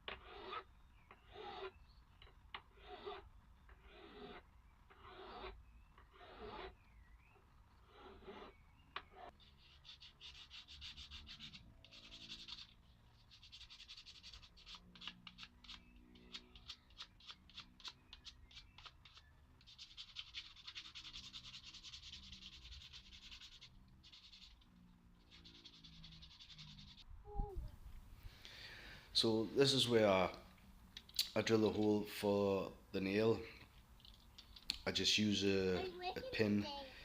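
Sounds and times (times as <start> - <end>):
hand tool scraping wood: 0.0 - 1.8, 2.5 - 6.8, 7.7 - 27.0.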